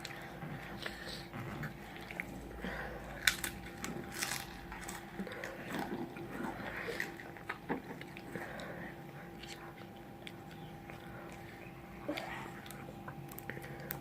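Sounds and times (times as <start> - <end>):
faint steady hum: 0.0 - 14.0
crunching crispy fried food: 3.2 - 5.9.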